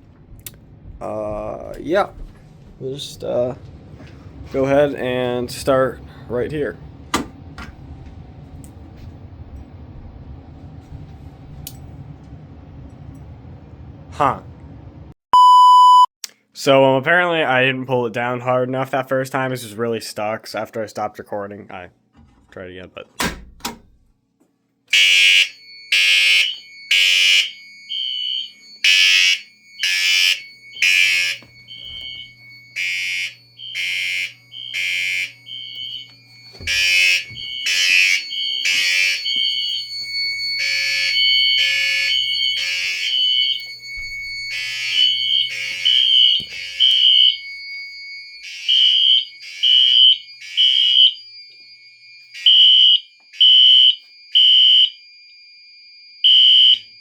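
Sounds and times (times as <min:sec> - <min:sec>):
second horn high beeps: 0:15.4 - 0:16.1
fire alarm horn blasts: 0:24.9 - 0:57.0.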